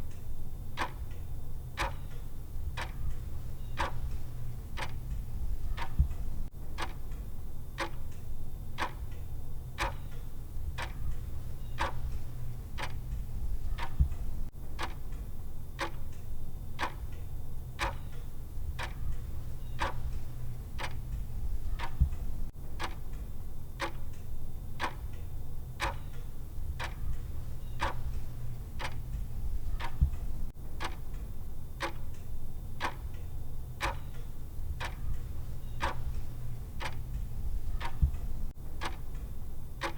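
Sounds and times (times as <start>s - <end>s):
clock ticking: 0.0s - 7.2s, 7.8s - 8.2s, 8.8s - 9.2s, 9.8s - 15.2s, 15.8s - 16.2s, 16.8s - 17.2s, 17.8s - 23.2s, 23.8s - 39.9s
steady low hum: 0.0s - 39.9s.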